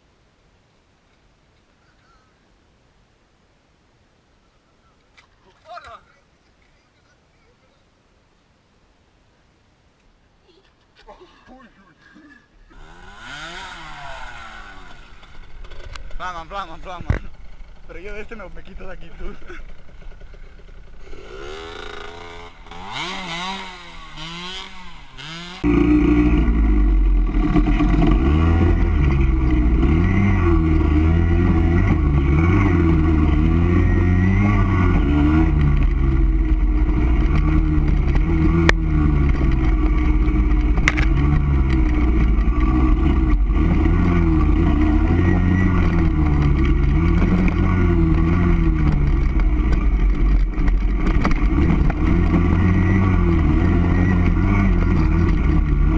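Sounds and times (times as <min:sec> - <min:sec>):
off-road vehicle engine: 0:10.6 - 0:55.9
heavy low rumble: 0:25.6 - 0:55.9.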